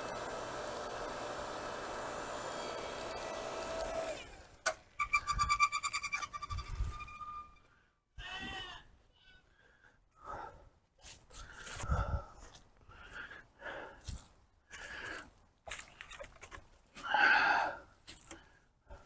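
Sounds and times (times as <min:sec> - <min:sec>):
steady whirring: 0:00.0 - 0:05.6
goat bleating: 0:08.2 - 0:09.4.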